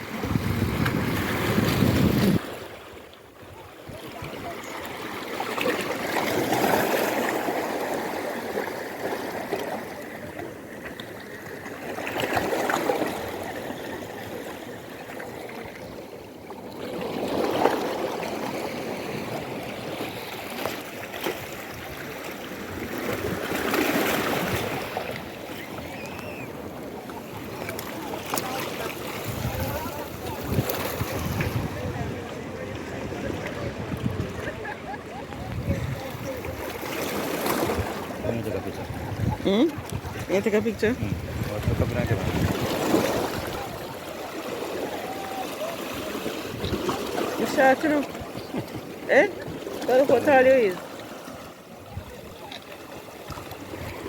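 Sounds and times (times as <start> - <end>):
wind rumble on microphone: 0.0 - 2.6, 29.2 - 36.5, 37.6 - 43.8
sea waves washing on beach: 0.0 - 54.0.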